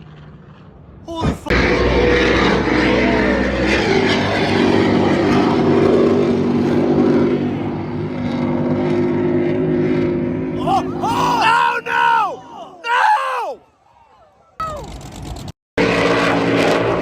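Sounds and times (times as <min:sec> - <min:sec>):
boat engine running: 0:01.5 - 0:11.5, 0:14.7 - 0:17.0.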